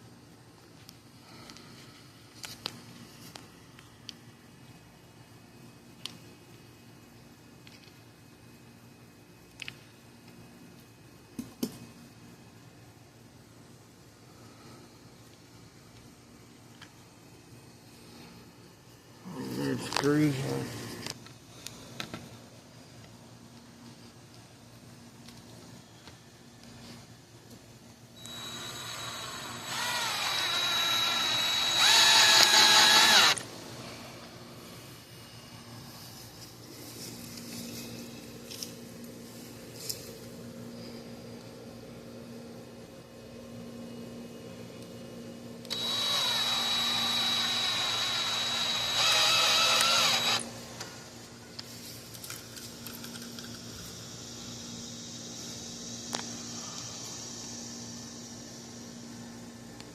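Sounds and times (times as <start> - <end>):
electric drill boring wood: 28.2 - 33.4, 45.7 - 50.5.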